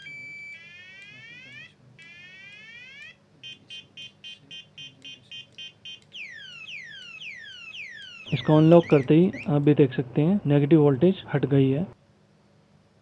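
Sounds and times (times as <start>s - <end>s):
motorcycle alarm siren: 0.0s - 9.6s.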